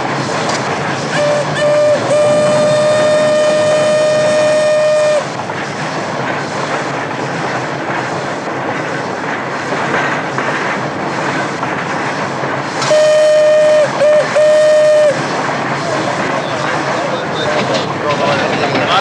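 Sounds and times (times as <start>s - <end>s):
train clattering on rails: 0.0s - 19.0s
train whistle: 1.1s - 5.4s, 12.8s - 15.2s.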